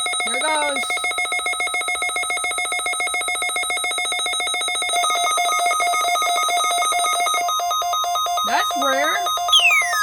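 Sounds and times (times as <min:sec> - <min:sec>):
pulsing electronic alert tone: 0:08.1 - 0:10.0
second tone pattern: 0:09.5 - 0:10.0.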